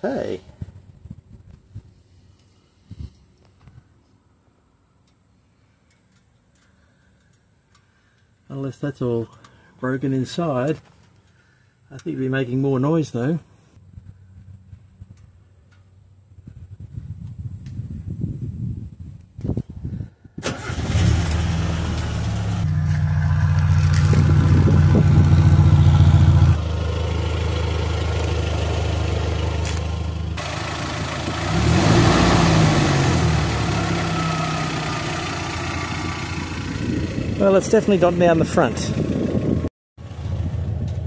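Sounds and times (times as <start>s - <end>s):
car engine starting and revving: 20.4s - 37.4s.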